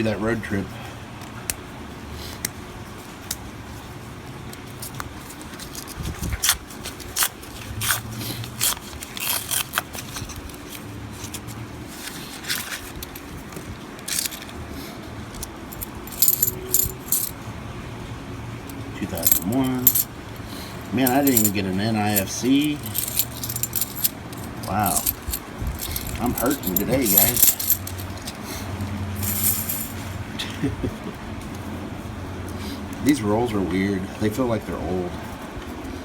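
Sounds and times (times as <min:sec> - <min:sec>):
coins clinking: 0:14.0 - 0:14.6, 0:15.4 - 0:17.4, 0:18.7 - 0:28.5, 0:29.1 - 0:30.2.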